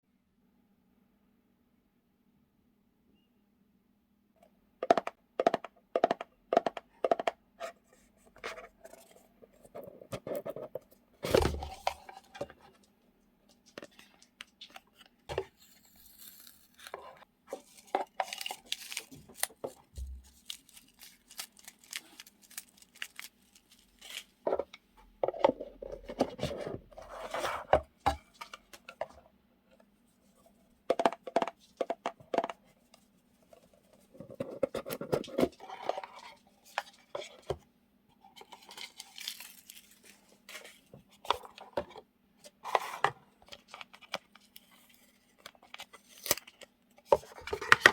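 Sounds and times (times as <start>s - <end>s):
paper rustling and crinkling: 13.5s - 24.4s, 38.4s - 41.6s.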